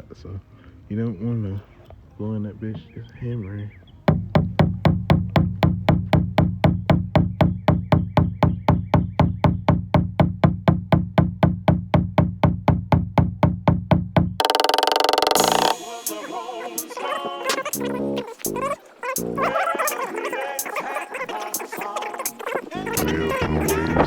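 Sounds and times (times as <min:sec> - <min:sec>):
percussive clicking beat: 0:04.1 - 0:20.0.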